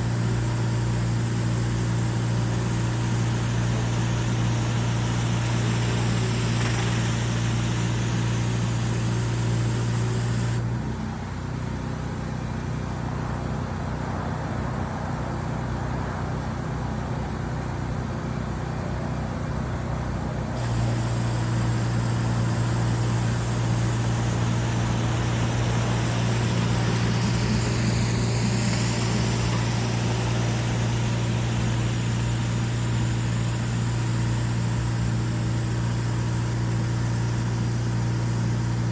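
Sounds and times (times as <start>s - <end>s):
water spray hissing: 0.0s - 10.6s, 20.6s - 38.9s
pressure washer engine running: 0.0s - 10.7s, 20.6s - 38.9s.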